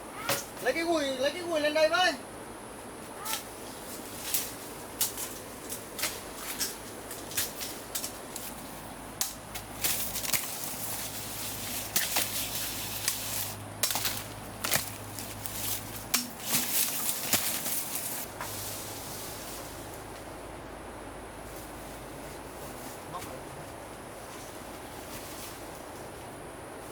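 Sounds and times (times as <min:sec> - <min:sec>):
sharp snaps and crackles: 0:04.2 - 0:18.3.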